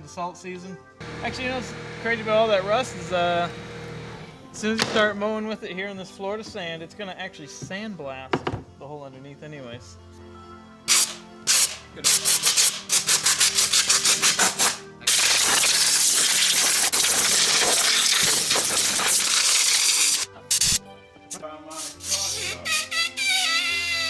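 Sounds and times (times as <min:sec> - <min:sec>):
background music: 0:00.0 - 0:24.0
loud steady hiss: 0:10.9 - 0:20.8
quick scraping strokes: 0:21.7 - 0:22.6.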